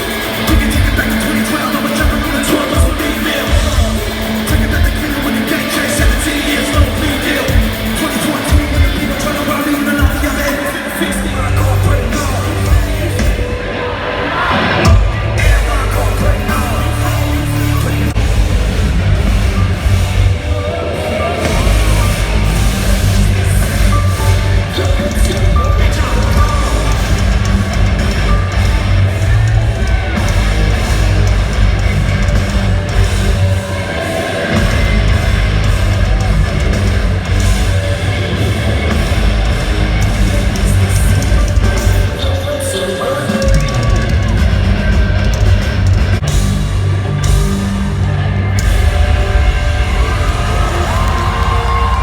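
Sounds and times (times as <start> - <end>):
live rock band playing: 0.0 - 52.0
vocals over band: 0.0 - 52.0.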